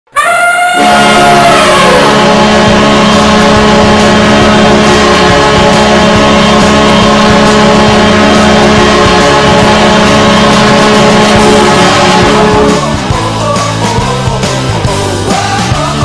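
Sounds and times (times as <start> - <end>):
goal horn blaring: 0.6 - 13.0.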